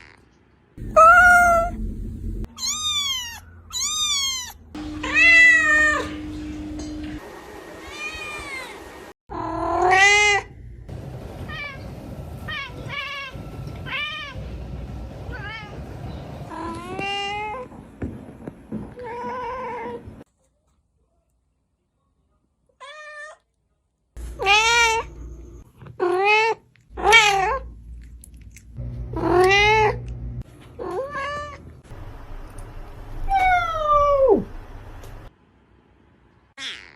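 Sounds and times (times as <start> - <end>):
cats meowing: 0.8 - 1.8, 2.5 - 6.2, 26.0 - 27.7.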